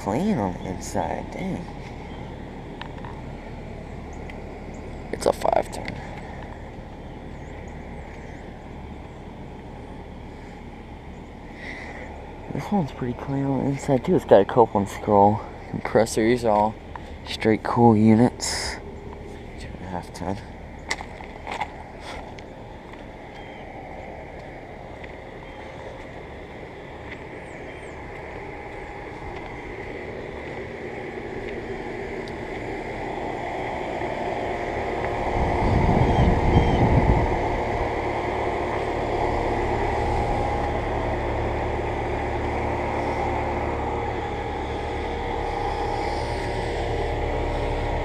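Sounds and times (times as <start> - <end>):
air conditioner hum: 0.0 - 48.0
loud rush of air: 28.5 - 48.0.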